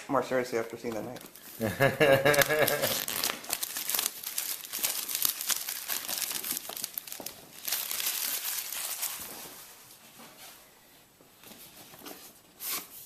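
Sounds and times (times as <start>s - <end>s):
plastic shrink-wrap crinkling and tearing: 0.9s - 9.6s.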